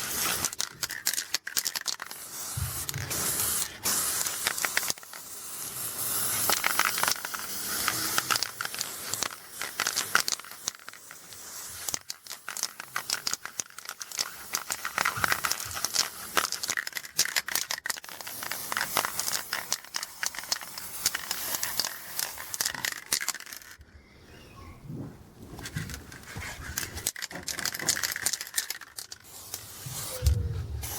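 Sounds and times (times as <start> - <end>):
spray can rattling: 0.0 - 23.8, 25.5 - 30.9
spray paint hissing: 0.0 - 23.8, 25.5 - 30.9.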